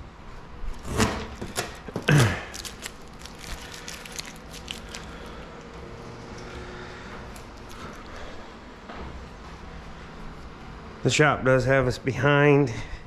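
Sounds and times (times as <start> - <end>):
vinyl film crackling and scraping: 0.8 - 5.4.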